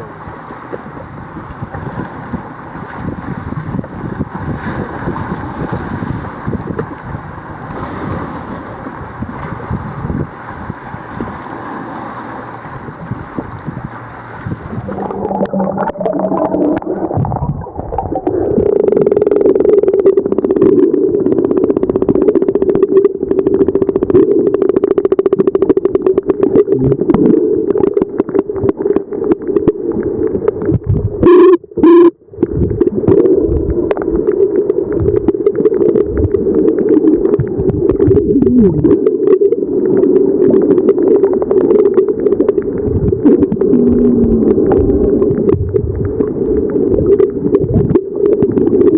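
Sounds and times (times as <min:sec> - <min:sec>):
whale clicks underwater: 0:12.8 - 0:48.9.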